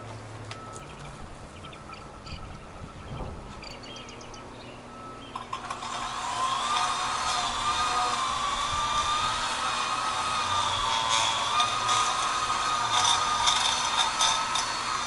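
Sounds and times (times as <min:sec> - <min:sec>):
electric motor high whine: 0:05.0 - 0:15.0.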